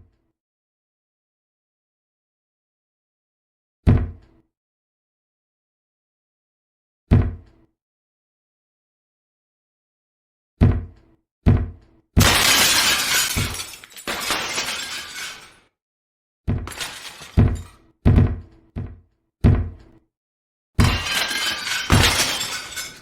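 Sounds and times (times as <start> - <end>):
object shattering: 12.2 - 15.6, 16.7 - 17.8, 20.8 - 23.0.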